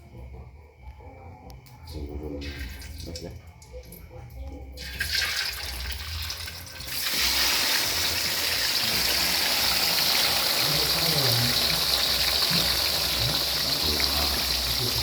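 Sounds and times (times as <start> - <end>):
fish frying in hot oil: 4.8 - 15.0.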